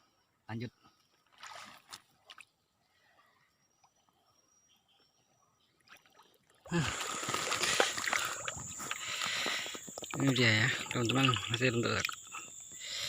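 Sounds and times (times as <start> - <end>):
water splashing and trickling: 1.2 - 3.1, 5.7 - 13.0.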